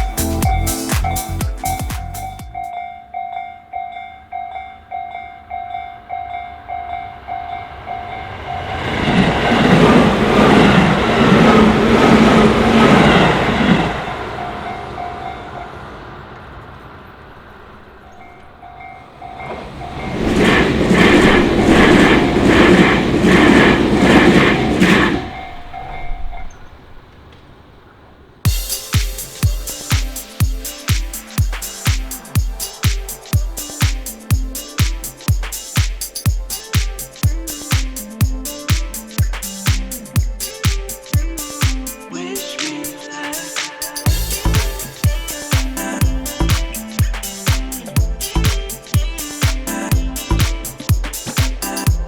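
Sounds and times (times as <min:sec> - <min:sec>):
level-crossing warning bell: 0:00.0 - 0:26.6, 0:28.5 - 0:41.6
train wheels clattering: 0:18.2 - 0:25.8.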